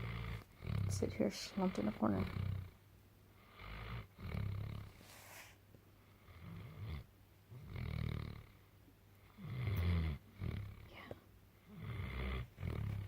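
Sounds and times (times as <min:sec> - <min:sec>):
person snoring: 0:00.0 - 0:02.8, 0:11.7 - 0:13.0.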